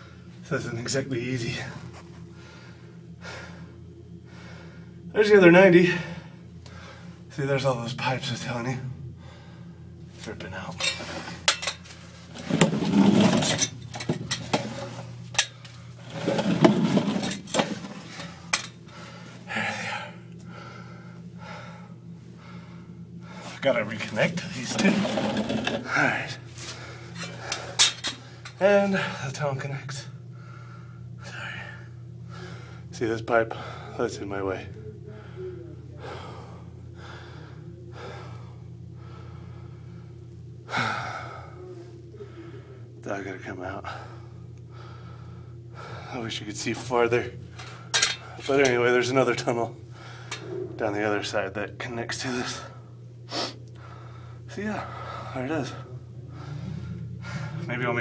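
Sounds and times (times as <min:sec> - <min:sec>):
man breathing heavily: 0:00.0 - 0:00.4, 0:01.8 - 0:05.1, 0:05.8 - 0:07.3, 0:09.0 - 0:10.1, 0:17.5 - 0:23.7, 0:25.9 - 0:29.2, 0:30.2 - 0:32.9, 0:33.5 - 0:34.0, 0:34.9 - 0:43.0, 0:43.8 - 0:46.3, 0:49.8 - 0:50.8, 0:52.7 - 0:58.0
steady low hum: 0:00.0 - 0:58.0.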